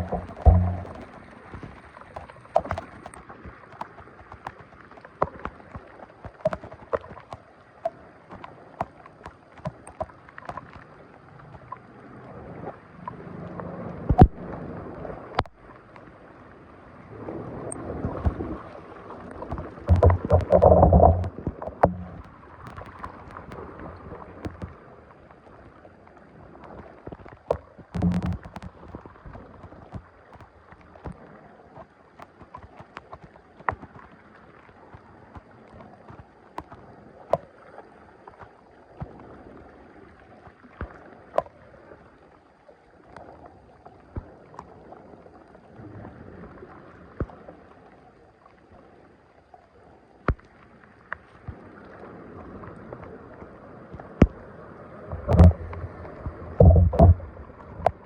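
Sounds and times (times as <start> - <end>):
sharp knocks and clicks: 0.0 - 3.2, 19.5 - 23.6, 27.5 - 29.0, 55.2 - 55.8, 56.6 - 58.0
water splashing and sloshing: 0.0 - 58.0.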